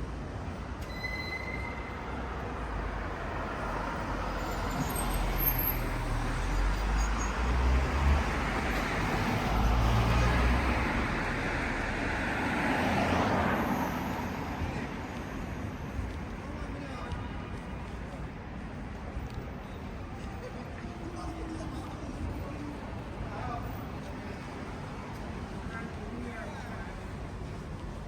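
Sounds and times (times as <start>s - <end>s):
vehicles passing: 0.0s - 28.0s.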